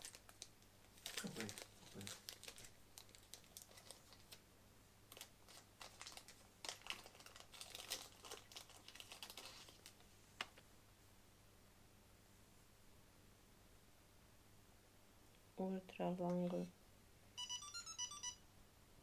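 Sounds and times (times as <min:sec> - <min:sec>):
plastic packaging clicks and crinkles: 0:00.0 - 0:04.4, 0:05.1 - 0:10.6.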